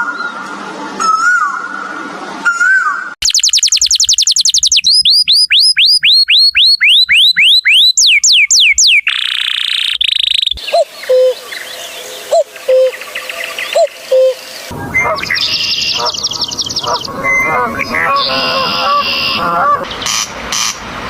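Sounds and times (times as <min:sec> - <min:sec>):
bird song whistles: 0:02.5 - 0:20.2
lower repeated bird call: 0:02.5 - 0:20.8.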